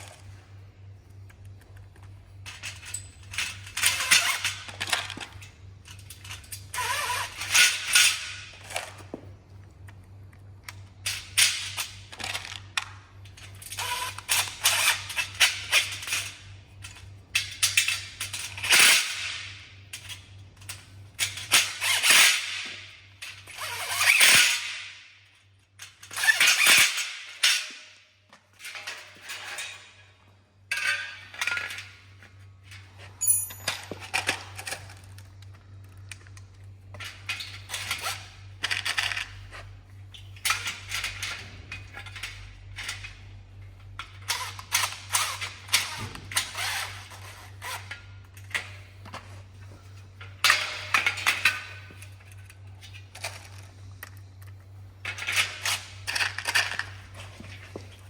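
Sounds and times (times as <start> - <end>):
hard parts clattering: 30.7 - 39.5.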